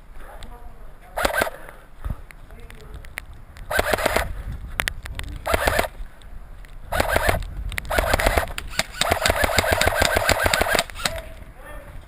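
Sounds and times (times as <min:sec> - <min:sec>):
airsoft gun firing bursts: 0:01.2 - 0:01.6, 0:03.7 - 0:04.3, 0:05.4 - 0:05.9, 0:06.9 - 0:11.3.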